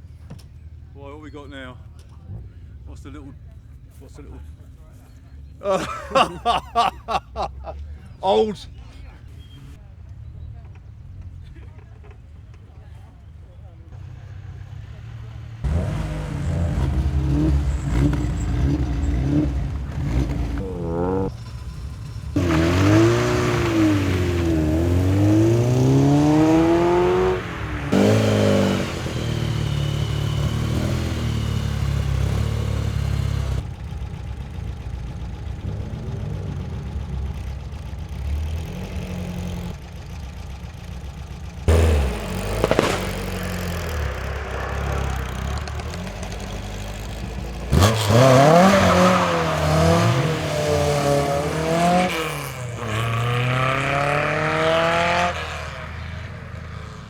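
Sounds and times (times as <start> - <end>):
car engine revving hard: 14.5 - 33.6, 41.6 - 57.0.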